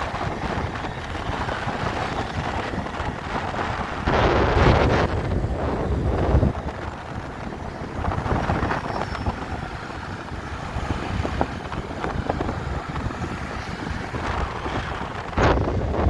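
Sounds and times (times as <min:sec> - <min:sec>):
traffic noise: 0:00.0 - 0:16.0
wind on microphone: 0:00.0 - 0:16.0.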